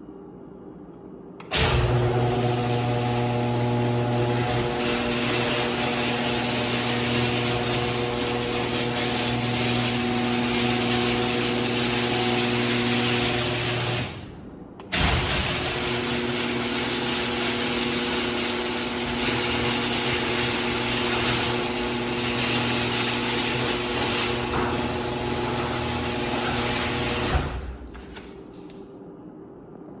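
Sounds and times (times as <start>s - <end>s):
garage door motor humming: 1.4s - 28.5s
garage door clunk: 14.8s - 27.9s.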